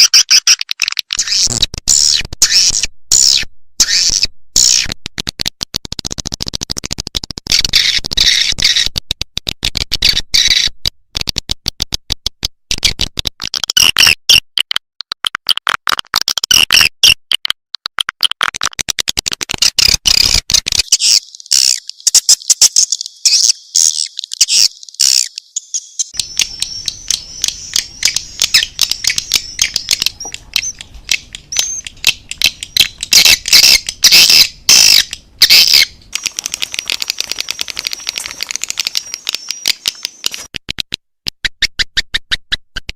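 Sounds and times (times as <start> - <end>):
swiftlets chirping: 20.8 - 40.5.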